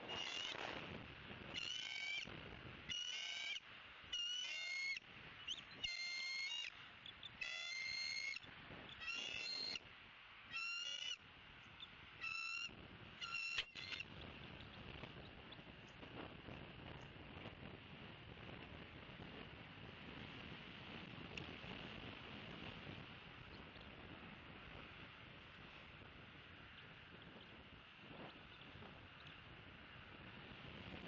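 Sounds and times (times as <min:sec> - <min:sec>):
eagle piping calls: 0:00.0 - 0:00.6, 0:01.5 - 0:02.3, 0:02.9 - 0:09.8, 0:10.5 - 0:11.2, 0:11.8 - 0:14.1.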